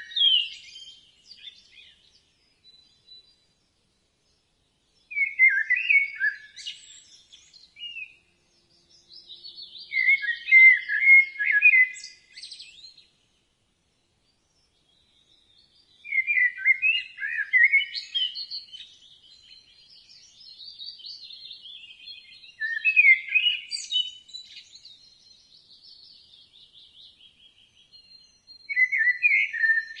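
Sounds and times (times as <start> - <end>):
songbird warbling: 9.3 - 12.9, 16.0 - 19.2, 20.2 - 24.8, 28.7 - 30.0.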